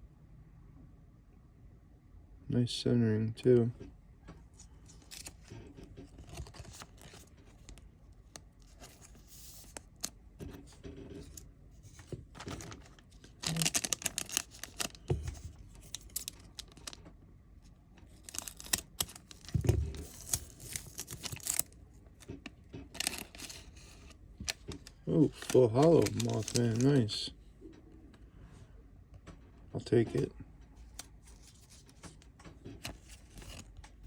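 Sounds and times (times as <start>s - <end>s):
cards being handled: 4.6s - 17.0s, 18.0s - 27.2s, 30.8s - 34.0s
card pack wrapper crinkling and tearing: 4.9s - 5.5s, 6.1s - 10.1s, 11.2s - 17.0s, 18.0s - 22.3s, 22.9s - 27.2s, 30.9s - 32.0s, 32.8s - 33.7s.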